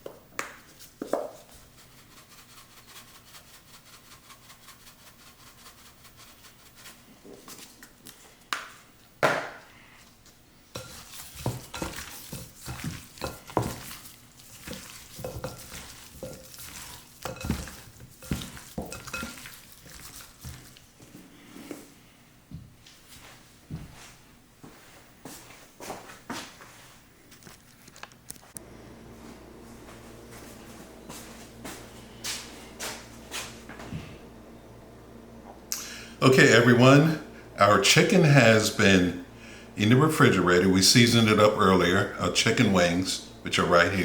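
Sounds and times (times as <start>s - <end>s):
chicken wings tossed in bowl: 10.8s - 20.9s
bowl and utensils clinking: 14.6s - 20.2s.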